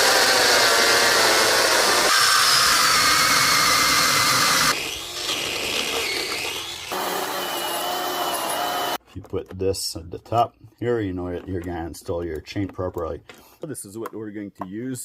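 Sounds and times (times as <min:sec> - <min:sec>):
chainsaw cutting wood: 0:00.0 - 0:09.0.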